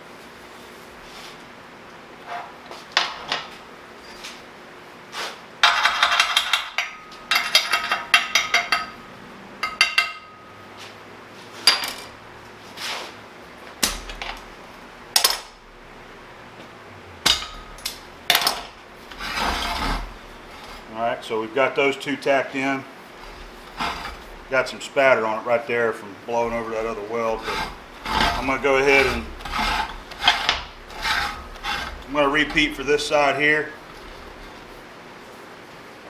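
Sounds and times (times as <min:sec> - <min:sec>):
metallic knocks and clanks: 0:05.6 - 0:09.0
welder crackling: 0:17.2 - 0:20.9, 0:26.3 - 0:34.8.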